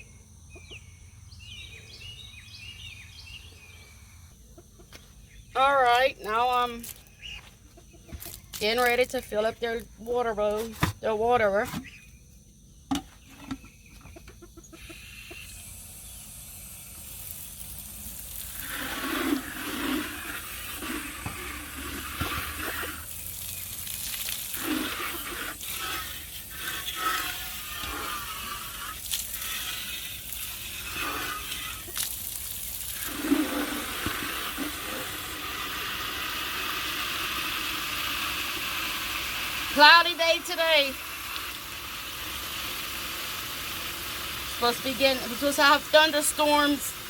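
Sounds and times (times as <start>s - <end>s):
chickens clucking: 4.5s - 5.2s, 7.2s - 8.4s, 13.3s - 15.6s
water running into a container: 15.5s - 47.0s.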